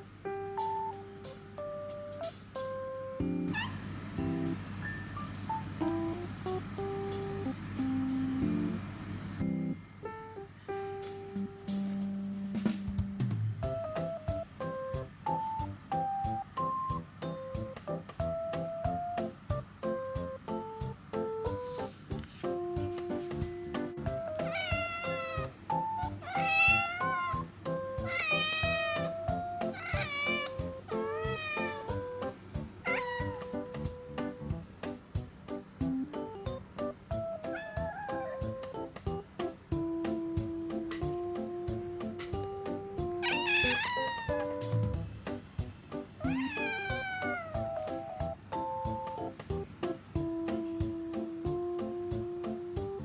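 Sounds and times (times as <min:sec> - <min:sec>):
light background music: 0:00.0 - 0:53.0
cat meowing: 0:03.4 - 0:03.9, 0:24.2 - 0:32.2, 0:32.8 - 0:34.1, 0:37.2 - 0:38.8, 0:43.0 - 0:44.9, 0:46.2 - 0:49.1.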